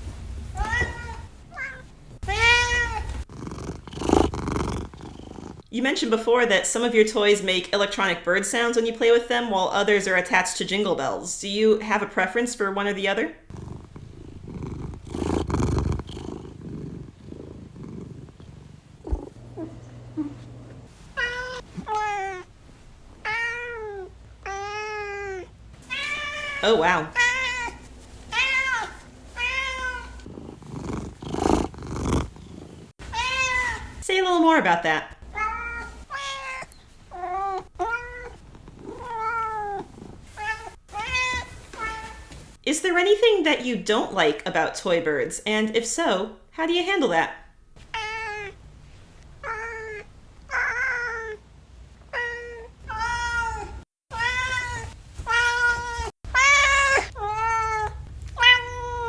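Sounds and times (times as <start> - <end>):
cat meowing: 0.6 - 3.2, 33.1 - 33.9, 52.2 - 59.0
cat purring: 2.3 - 5.7, 13.4 - 21.8, 29.7 - 33.0, 37.1 - 40.7.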